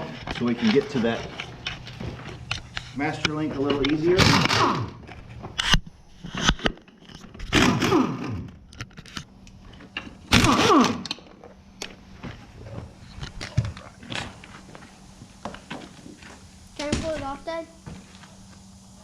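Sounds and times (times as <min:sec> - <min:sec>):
metal scraping: 0:00.0 - 0:07.8.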